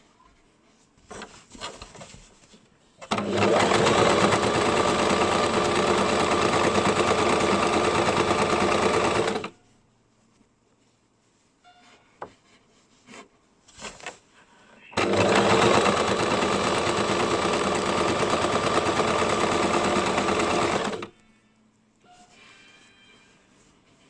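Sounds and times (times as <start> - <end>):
sewing machine stitching: 3.0 - 9.6, 15.0 - 21.1.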